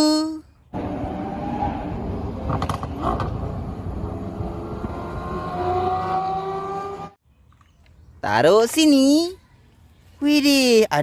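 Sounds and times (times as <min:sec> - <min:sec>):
race car engine: 0:00.8 - 0:07.2.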